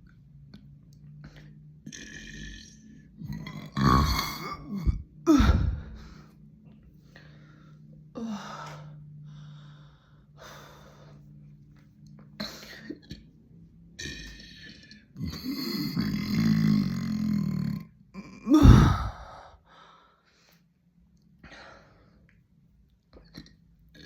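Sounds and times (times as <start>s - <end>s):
person burping: 1.8s - 6.0s, 14.0s - 19.4s
person breathing: 4.8s - 11.4s, 18.6s - 20.7s, 21.4s - 22.3s.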